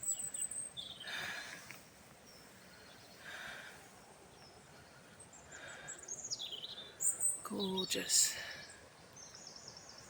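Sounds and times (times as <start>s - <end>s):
faint bird chirps: 2.2s - 10.0s.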